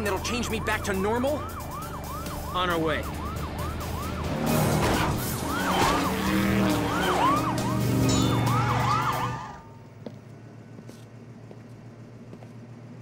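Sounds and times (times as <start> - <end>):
police siren wailing: 0.0 - 9.8
low vehicle or music bed: 0.0 - 13.0.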